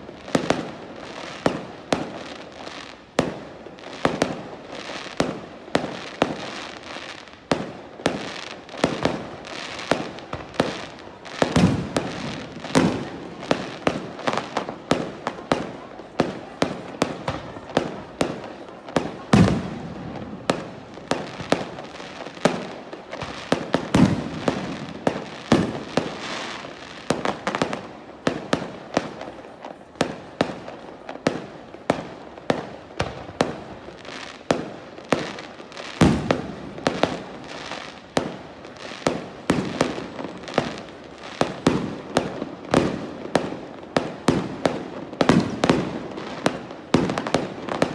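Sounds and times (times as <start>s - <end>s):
fireworks bangs and crackles: 0.0s - 47.9s
deep firework booms: 11.4s - 18.4s, 19.0s - 26.2s, 36.0s - 37.3s.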